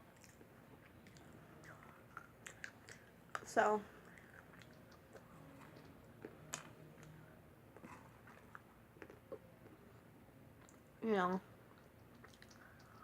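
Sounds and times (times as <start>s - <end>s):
faint chewing: 0.1s - 10.9s, 11.6s - 13.0s
soft mouth clicks: 1.0s - 3.5s, 4.1s - 5.9s, 11.7s - 13.0s.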